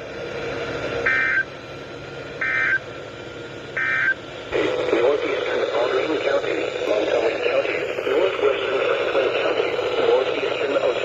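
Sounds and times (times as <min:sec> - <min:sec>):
digital data tone bursts: 0:01.1 - 0:01.5, 0:02.4 - 0:02.8, 0:03.8 - 0:04.2
faint radio background noise: 0:04.5 - 0:11.0.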